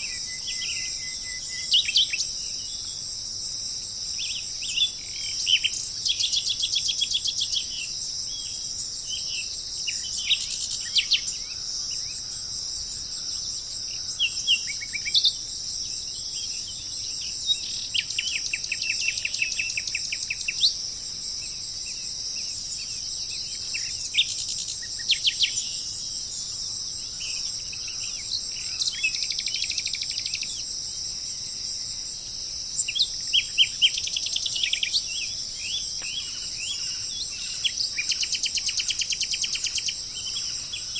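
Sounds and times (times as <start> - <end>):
insects droning: 0.0 - 40.9
songbirds singing: 0.0 - 40.9.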